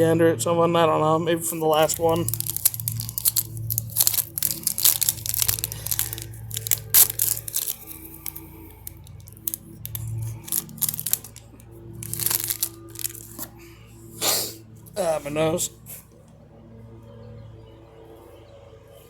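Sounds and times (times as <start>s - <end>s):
card handling rustling: 1.6s - 13.6s
wrapper tearing and crinkling: 1.7s - 13.5s.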